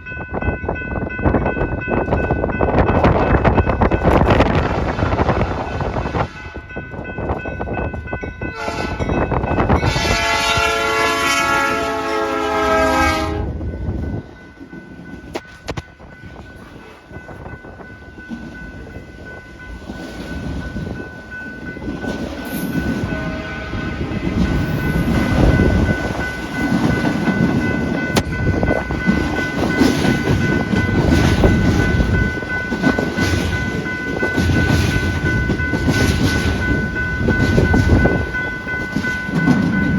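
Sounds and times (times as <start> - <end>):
train wheels on rails: 0.0 - 39.9
wind rumble: 0.0 - 39.9
locomotive air horn blast: 8.6 - 9.1, 9.8 - 13.5, 23.2 - 23.9.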